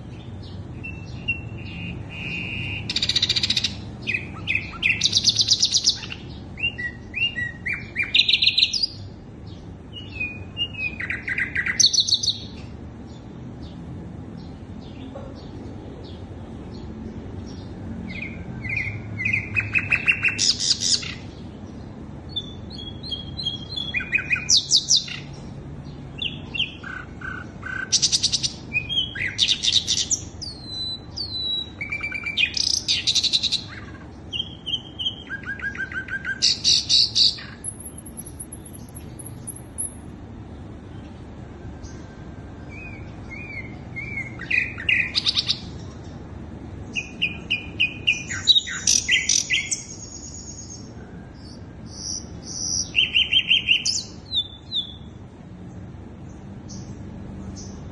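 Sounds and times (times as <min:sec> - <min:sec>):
flycatcher singing trills and whistles: 0:00.0 - 0:12.6, 0:17.5 - 0:21.5, 0:22.3 - 0:40.1, 0:41.8 - 0:46.2, 0:46.9 - 0:55.2
low steady background hum: 0:00.0 - 0:57.9.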